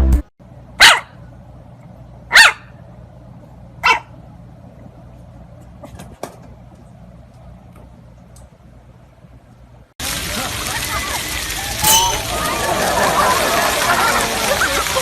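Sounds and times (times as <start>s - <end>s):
dog barking: 0.8s - 1.2s, 2.3s - 2.7s, 3.8s - 4.1s.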